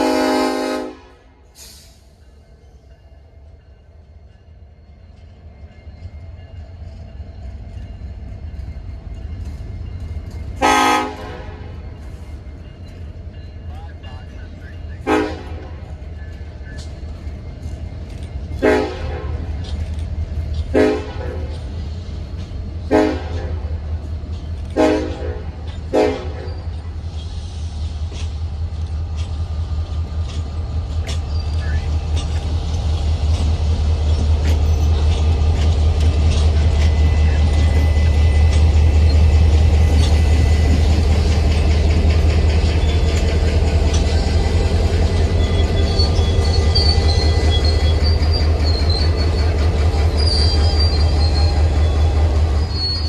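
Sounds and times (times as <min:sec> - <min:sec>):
locomotive horn blast: 0:00.0 - 0:01.4, 0:10.6 - 0:11.8, 0:15.0 - 0:15.8, 0:18.6 - 0:19.5, 0:20.7 - 0:21.5, 0:22.8 - 0:23.6, 0:24.7 - 0:26.5
diesel locomotive rumbling: 0:00.0 - 0:53.0.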